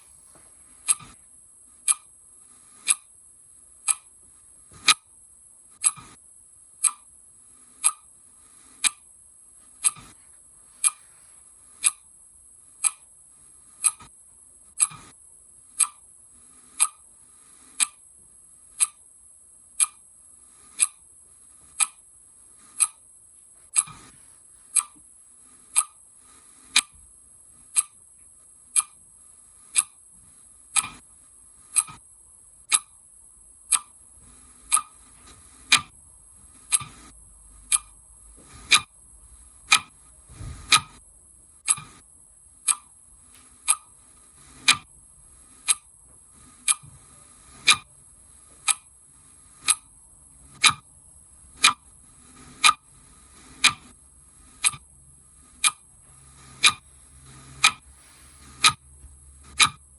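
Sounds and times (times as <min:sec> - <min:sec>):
clock ticking: 0:00.8 - 0:01.2, 0:01.8 - 0:02.2, 0:02.8 - 0:03.1, 0:03.8 - 0:04.2, 0:04.8 - 0:05.1, 0:05.8 - 0:06.2, 0:06.8 - 0:07.1, 0:07.8 - 0:08.1, 0:08.8 - 0:09.1, 0:09.8 - 0:10.2, 0:10.8 - 0:11.1, 0:11.8 - 0:12.1, 0:12.8 - 0:13.1, 0:13.8 - 0:14.1, 0:14.8 - 0:15.1, 0:15.8 - 0:16.1, 0:16.7 - 0:17.0, 0:17.8 - 0:18.0, 0:18.8 - 0:19.0, 0:19.8 - 0:20.0, 0:20.7 - 0:21.0, 0:21.7 - 0:22.0, 0:22.8 - 0:23.0, 0:23.7 - 0:24.1, 0:24.7 - 0:25.0, 0:25.7 - 0:26.0, 0:26.7 - 0:27.0, 0:27.7 - 0:28.0, 0:28.7 - 0:29.0, 0:29.7 - 0:30.0, 0:30.7 - 0:31.0, 0:31.7 - 0:32.0, 0:32.7 - 0:33.0, 0:33.7 - 0:34.0, 0:34.7 - 0:36.0, 0:36.6 - 0:38.9, 0:39.7 - 0:40.0, 0:40.7 - 0:41.0, 0:41.6 - 0:42.0, 0:42.7 - 0:43.0, 0:43.6 - 0:44.0, 0:44.6 - 0:44.9, 0:45.6 - 0:45.9, 0:46.6 - 0:47.0, 0:47.6 - 0:47.9, 0:48.6 - 0:48.9, 0:49.6 - 0:49.9, 0:50.6 - 0:50.8, 0:51.6 - 0:51.8, 0:52.6 - 0:52.8, 0:53.6 - 0:53.9, 0:54.6 - 0:54.9, 0:55.6 - 0:55.9, 0:56.5 - 0:56.9, 0:57.6 - 0:57.9, 0:58.5 - 0:58.8, 0:59.4 - 0:59.9
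soft low thump: 0:40.3 - 0:40.7.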